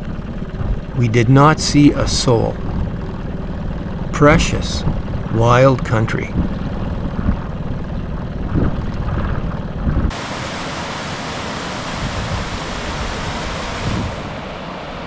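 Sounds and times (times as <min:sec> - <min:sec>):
low rumble: 0:00.0 - 0:10.2
stream water flowing: 0:10.1 - 0:15.0.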